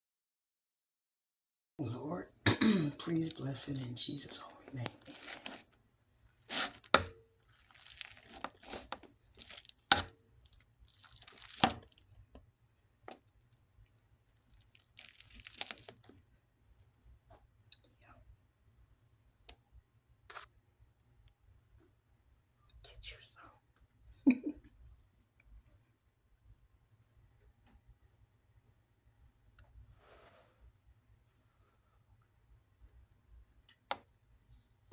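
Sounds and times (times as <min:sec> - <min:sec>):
crunching and chewing: 0:03.0 - 0:12.3, 0:13.1 - 0:16.2.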